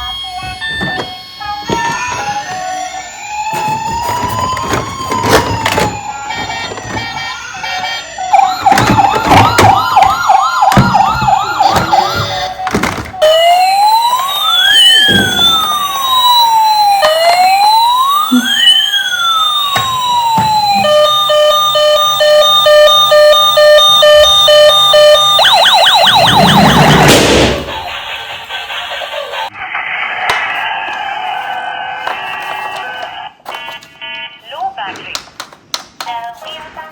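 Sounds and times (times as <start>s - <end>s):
toy siren wailing: 0.0s - 27.1s.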